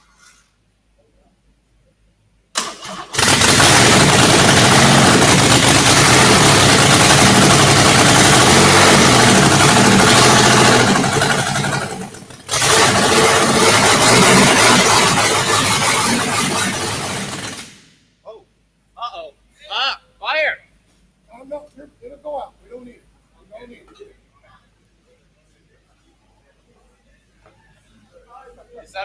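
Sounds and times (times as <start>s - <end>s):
car engine cranking and catching: 2.6s - 17.8s
loud unmuffled engine running: 3.2s - 17.8s.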